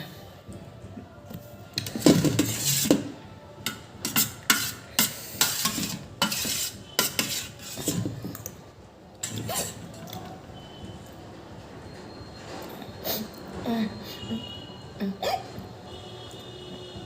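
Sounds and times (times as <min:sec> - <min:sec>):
cutlery clinking against a bowl: 0:01.8 - 0:08.6, 0:09.2 - 0:10.2.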